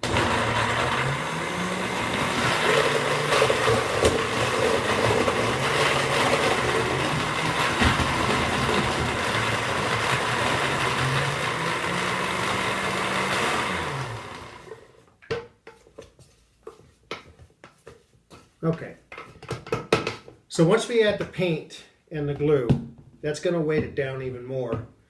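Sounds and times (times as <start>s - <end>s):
blender motor running: 0.0s - 15.0s.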